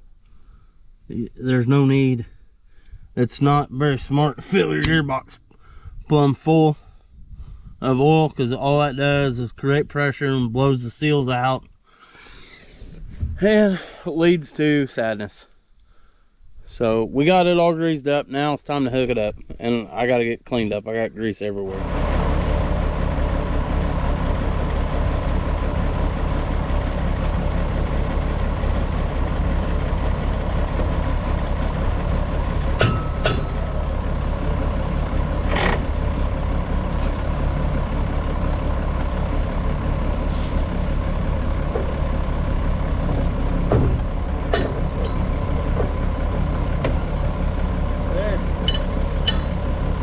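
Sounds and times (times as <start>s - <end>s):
tractor engine idling: 0.0s - 7.0s, 7.6s - 50.0s
metal clanks: 30.6s - 34.7s, 43.2s - 46.1s, 48.5s - 49.8s.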